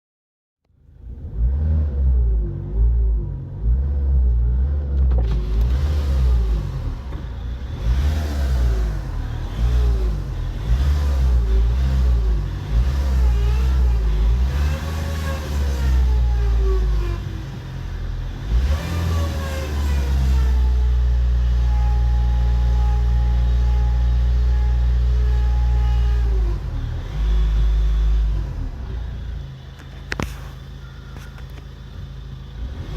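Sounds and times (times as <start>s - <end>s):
diesel engine low rumble: 0.6s - 32.9s
power steering pump whining: 4.2s - 32.8s.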